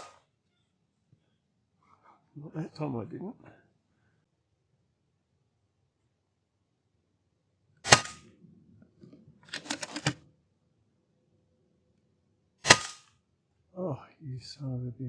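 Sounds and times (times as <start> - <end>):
air rifle shot: 7.8 - 8.3, 12.6 - 13.1
quick clicks: 9.4 - 10.2.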